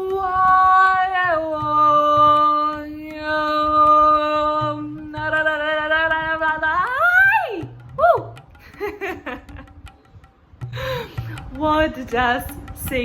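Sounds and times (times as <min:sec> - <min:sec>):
woman chanting wordless tones: 0:11.5 - 0:13.0.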